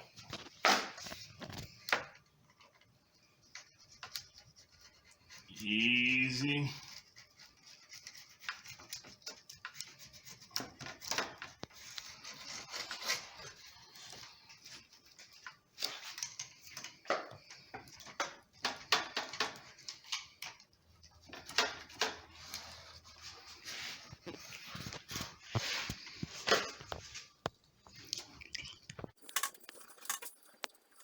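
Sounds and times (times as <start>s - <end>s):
spline roller scratchy rubbing: 3.6s - 17.7s, 20.7s - 26.4s.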